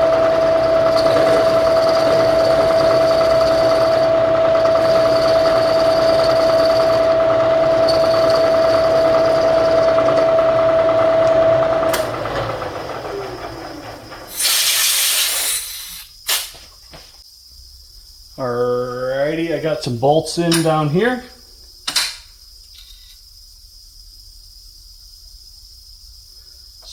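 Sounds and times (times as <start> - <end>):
milling machine spindle whining: 0.0 - 16.0
loud hiss: 14.3 - 16.8.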